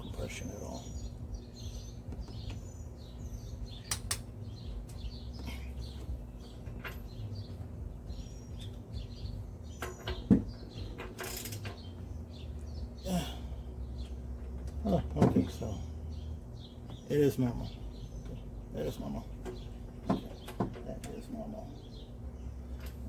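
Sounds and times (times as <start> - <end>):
ratchet clicking and creaking: 3.9 - 12.0.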